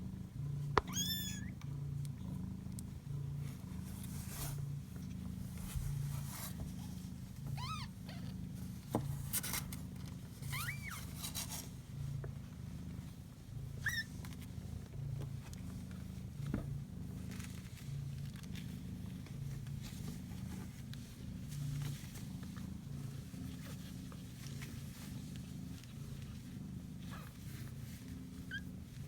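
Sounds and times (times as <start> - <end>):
kitten purring: 0.0 - 29.0
faint high squeaks: 0.9 - 1.5, 10.5 - 11.1.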